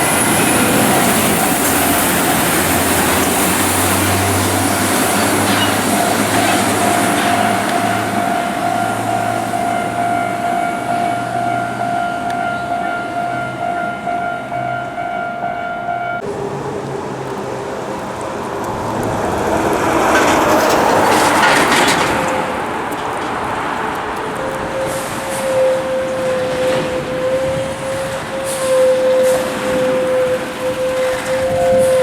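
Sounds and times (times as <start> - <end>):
truck engine drone: 0.0 - 32.0.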